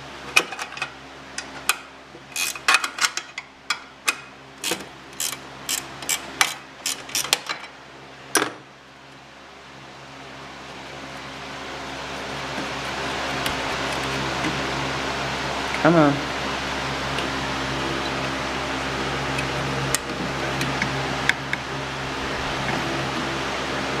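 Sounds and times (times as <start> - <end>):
hand wrench clicking: 4.6 - 7.4.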